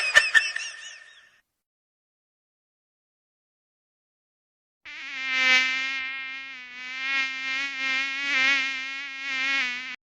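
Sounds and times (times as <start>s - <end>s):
mosquito buzzing whine: 4.9s - 10.0s.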